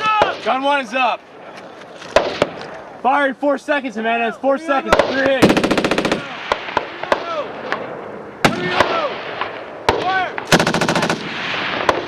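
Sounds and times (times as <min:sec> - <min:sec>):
machine-gun fire: 0:05.0 - 0:07.4, 0:10.4 - 0:12.0.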